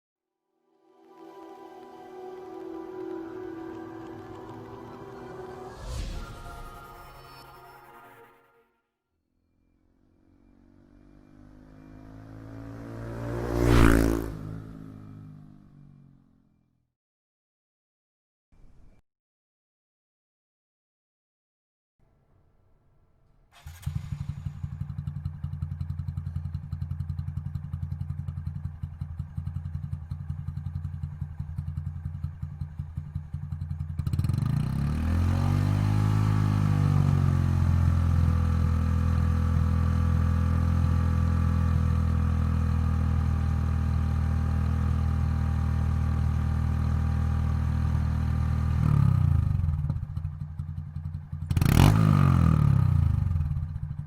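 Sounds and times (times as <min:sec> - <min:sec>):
motorcycle engine idling and revving: 0:09.4 - 0:16.8, 0:23.5 - 0:54.0.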